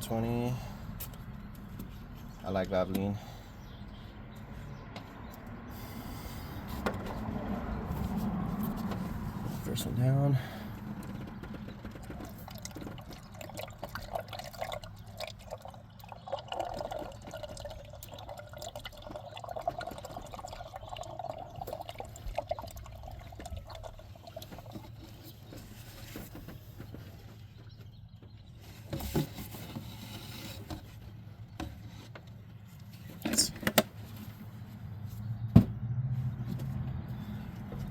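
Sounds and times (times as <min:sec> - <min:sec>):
oil gurgling into a funnel: 0:12.0 - 0:25.5.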